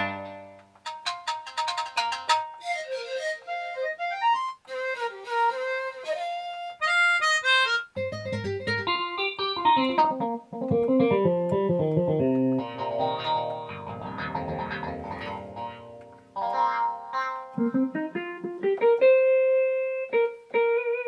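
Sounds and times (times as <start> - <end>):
plucked synth melodic runs: 7.2 - 19.0.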